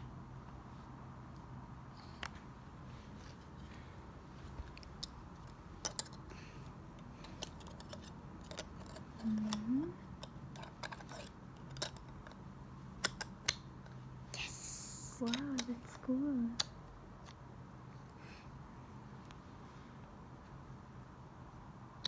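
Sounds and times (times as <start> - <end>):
magnetic toy pieces clicking: 4.8 - 6.3, 7.0 - 12.4, 13.0 - 14.0, 15.2 - 17.4
child humming: 9.2 - 10.0.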